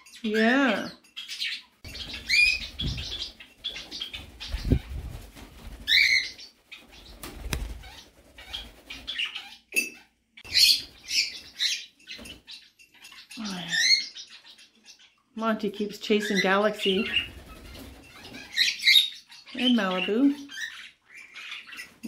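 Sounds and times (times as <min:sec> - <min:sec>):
parrots chirping: 0:00.0 - 0:05.1, 0:05.8 - 0:22.0
birds flapping wings: 0:02.0 - 0:09.3, 0:17.1 - 0:18.5.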